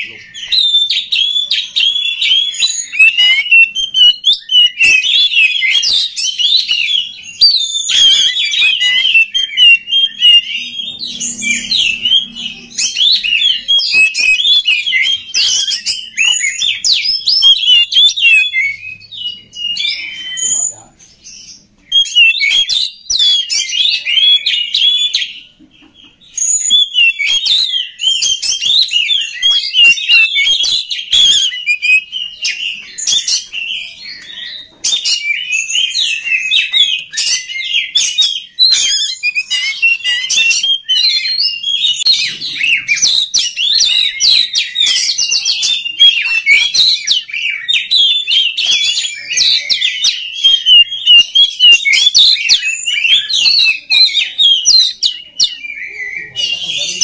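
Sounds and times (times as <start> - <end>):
bird singing chattering and whistling: 0.0 - 57.0.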